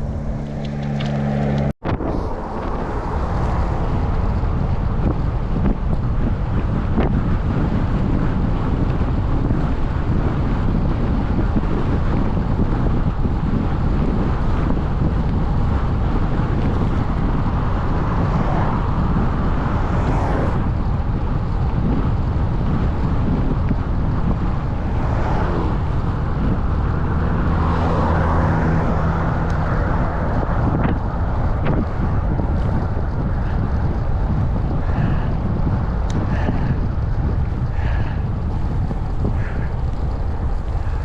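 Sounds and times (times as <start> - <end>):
vehicle engine hum: 0.0 - 41.0
wind buffeting microphone: 0.0 - 41.0.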